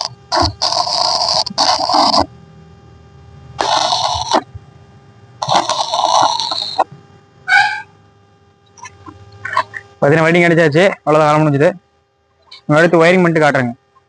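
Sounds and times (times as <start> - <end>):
electric arc welding crackling: 0.0 - 2.3, 3.6 - 4.6, 5.4 - 6.9.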